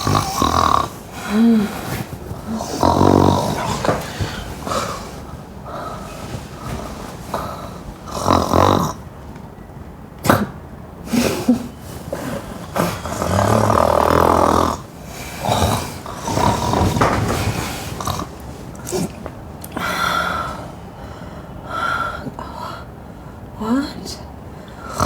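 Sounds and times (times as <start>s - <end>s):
person snoring loudly: 0.0s - 9.0s, 11.1s - 19.2s.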